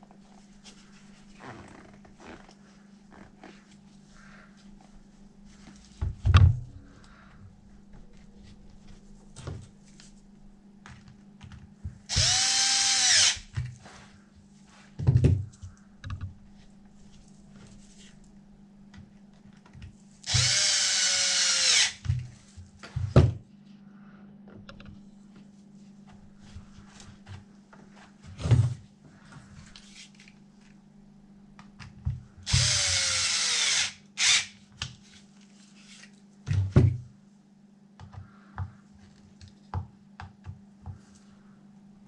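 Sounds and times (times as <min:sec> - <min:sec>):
power drill spinning: 0:12.1 - 0:13.5, 0:20.2 - 0:22.0, 0:32.5 - 0:34.6.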